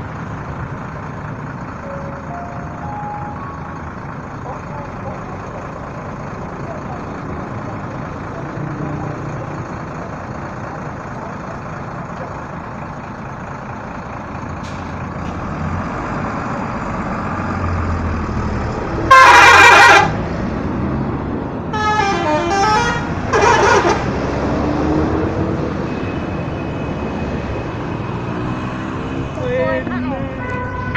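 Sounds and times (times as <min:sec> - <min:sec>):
idling bus engines: 0:00.0 - 0:30.9
traffic: 0:00.0 - 0:30.9
bus musical horn: 0:19.0 - 0:20.2, 0:21.7 - 0:24.2, 0:30.2 - 0:30.9.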